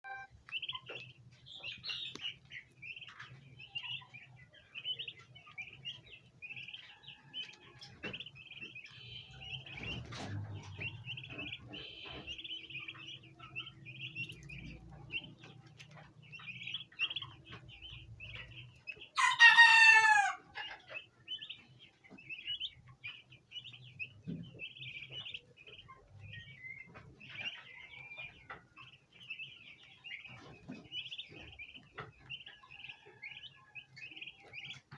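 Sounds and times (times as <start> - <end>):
poults chirping: 0.0 - 34.9
adult fowl calling: 19.2 - 21.0.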